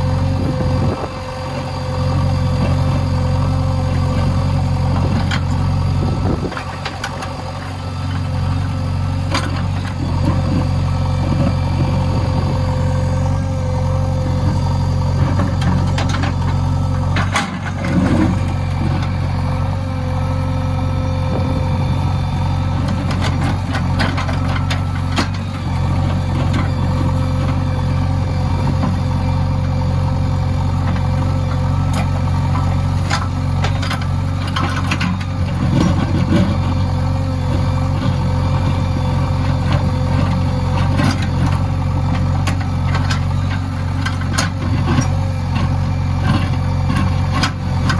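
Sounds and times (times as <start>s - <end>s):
steady whine: 0.0s - 35.1s
diesel engine running: 0.0s - 47.9s.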